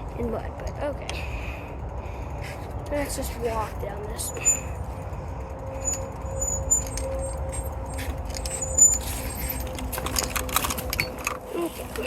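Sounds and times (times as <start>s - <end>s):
low rumble: 0.0s - 12.0s
metal items clinking: 5.8s - 12.0s.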